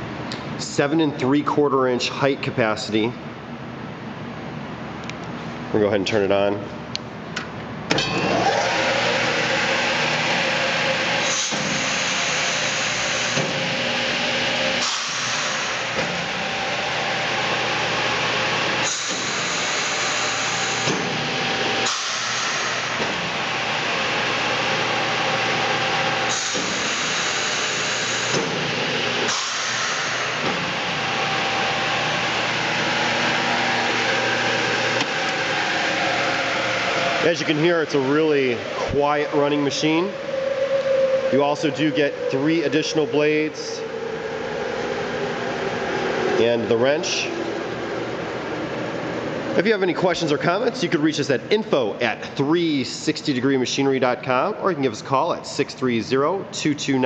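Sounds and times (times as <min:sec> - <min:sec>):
miter saw whirring: 0:08.0 - 0:49.7.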